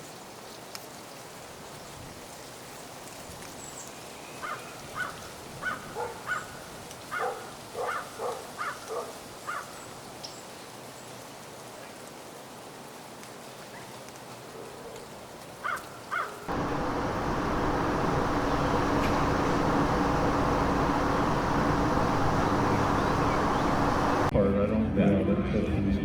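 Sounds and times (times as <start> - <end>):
steady rain falling: 16.5 - 24.3.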